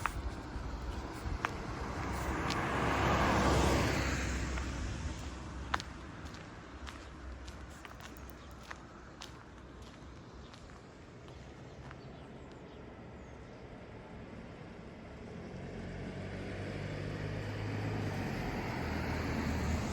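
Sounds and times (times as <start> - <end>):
vehicle engine hum: 0.0 - 19.9
vehicle hiss: 1.1 - 4.8.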